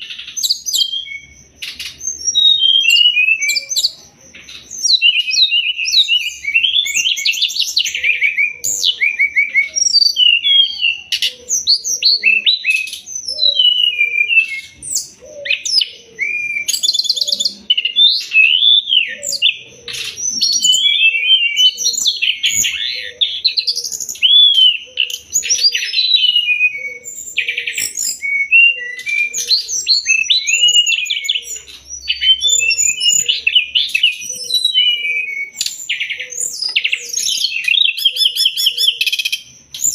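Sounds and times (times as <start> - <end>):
bird singing chirps and trills: 0.0 - 39.9.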